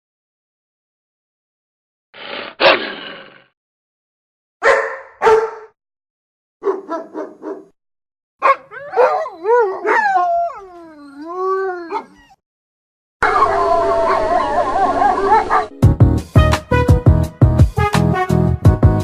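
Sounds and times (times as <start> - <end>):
dog yipping: 4.6 - 5.7, 8.4 - 12.4
dog barking: 4.6 - 5.8, 6.6 - 7.8, 8.4 - 10.2, 15.0 - 15.7
dog howling: 8.6 - 12.4, 13.2 - 15.7.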